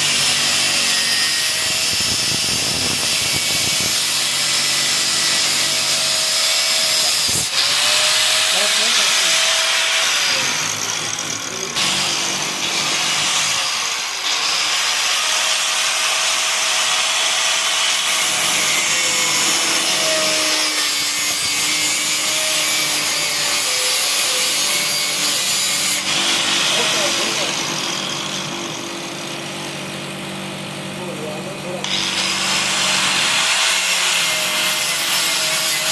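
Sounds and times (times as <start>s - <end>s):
angle grinder cutting: 0.0s - 30.1s, 31.8s - 35.9s.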